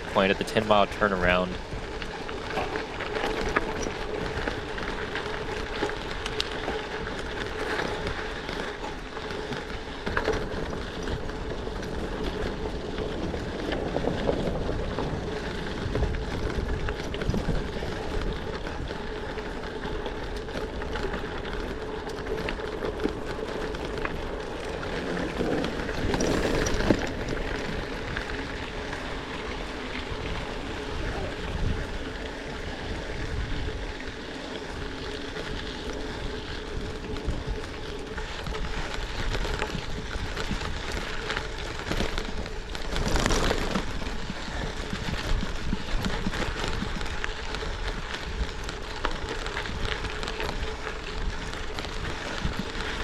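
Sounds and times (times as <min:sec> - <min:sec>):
bike rattling: 0:00.0 - 0:53.0
tyres rolling on gravel: 0:00.0 - 0:53.0
wind on microphone: 0:23.9 - 0:34.0, 0:34.8 - 0:53.0.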